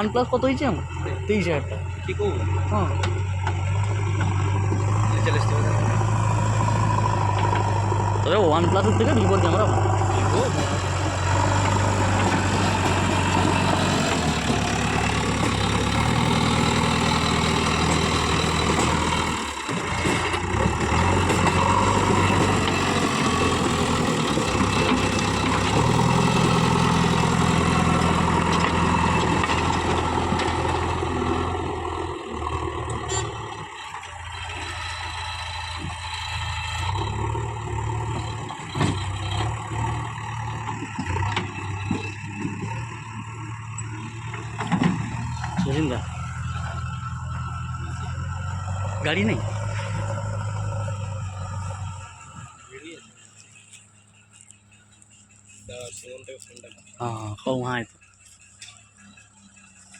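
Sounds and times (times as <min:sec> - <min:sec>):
diesel engine running: 0:00.0 - 0:59.9.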